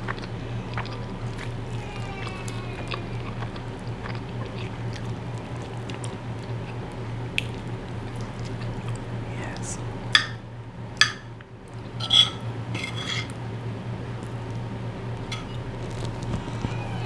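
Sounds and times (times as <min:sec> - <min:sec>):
close chewing: 0:00.0 - 0:10.0, 0:14.0 - 0:17.0
steady low hum: 0:00.0 - 0:17.0.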